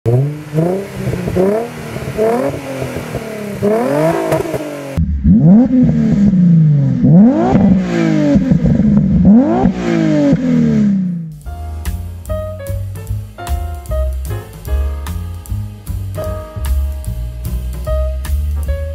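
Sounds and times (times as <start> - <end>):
car engine revving: 0.1 - 11.5.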